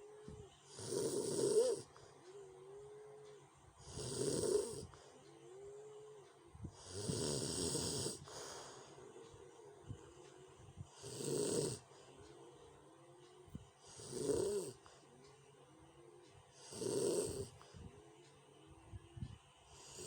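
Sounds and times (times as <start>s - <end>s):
person snoring loudly: 0.7s - 1.9s, 3.8s - 4.9s, 6.8s - 8.4s, 11.0s - 11.8s, 13.8s - 14.8s, 16.6s - 17.6s.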